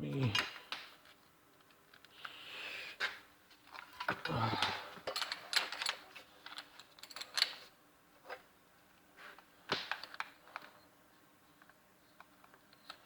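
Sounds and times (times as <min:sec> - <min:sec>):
objects being moved about: 0:03.0 - 0:08.5.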